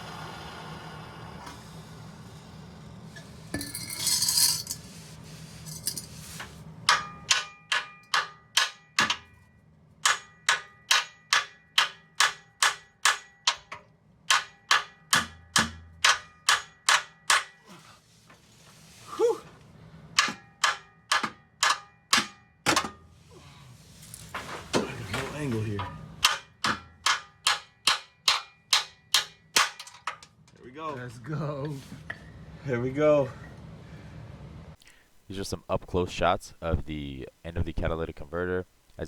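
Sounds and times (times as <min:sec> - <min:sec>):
hammer striking metal bolt: 0:06.9 - 0:09.4, 0:10.0 - 0:17.6, 0:20.2 - 0:23.0, 0:26.2 - 0:30.3.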